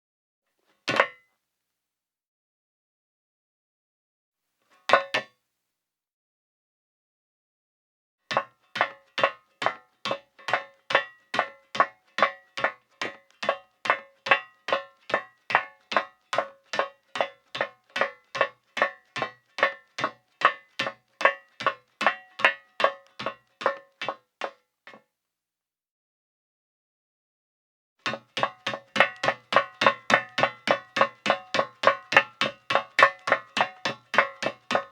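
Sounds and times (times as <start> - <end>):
high-heeled footsteps on metal: 8.3 - 24.6, 28.0 - 34.9.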